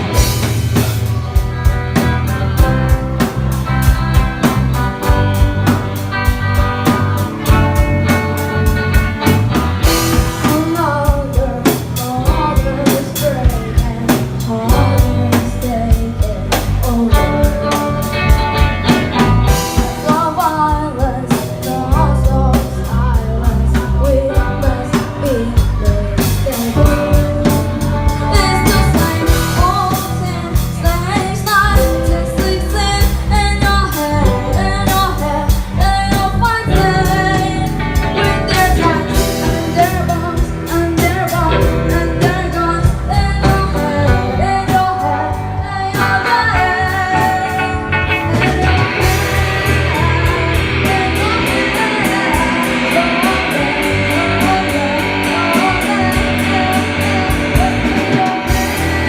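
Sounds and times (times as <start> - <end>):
live rock band playing: 0.0 - 59.0
person singing lead vocal: 9.8 - 59.0.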